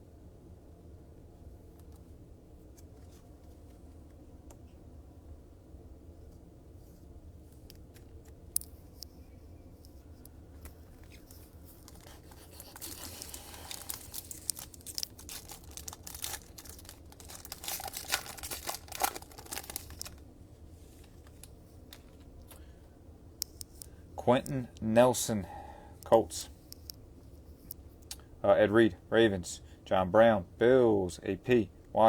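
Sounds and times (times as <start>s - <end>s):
foil wrapper tearing and crinkling: 11.0s - 20.2s.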